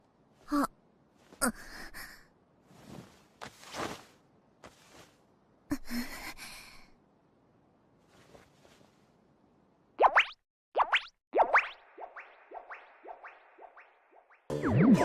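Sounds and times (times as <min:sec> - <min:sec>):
woman gasping and breathing heavily: 0:00.4 - 0:00.7, 0:01.3 - 0:02.3, 0:05.7 - 0:07.0.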